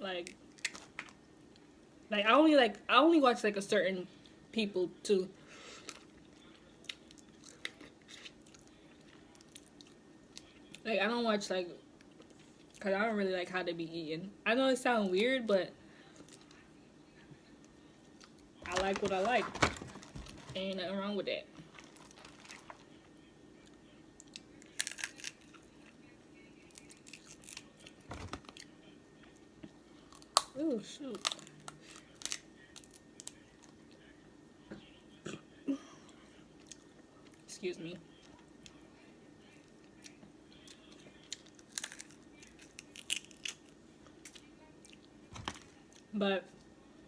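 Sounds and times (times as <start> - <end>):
seafood shells cracking: 0.6 - 1.1, 21.6 - 22.9, 24.3 - 25.5, 26.7 - 28.6, 31.2 - 33.4, 41.3 - 44.4, 45.4 - 45.7.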